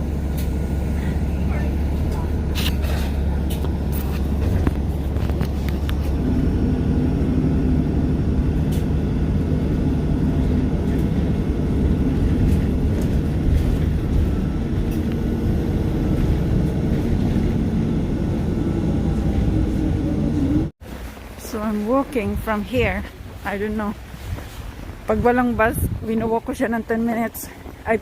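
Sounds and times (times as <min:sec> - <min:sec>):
bus engine running: 0:00.0 - 0:28.0.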